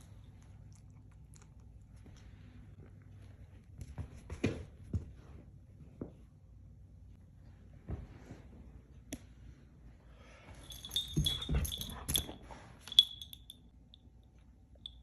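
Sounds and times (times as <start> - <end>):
metallic jingling and clinking: 10.6 - 14.0.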